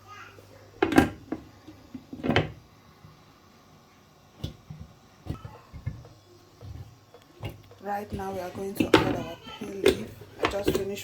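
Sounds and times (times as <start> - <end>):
cookware clicks and taps: 4.4 - 11.0.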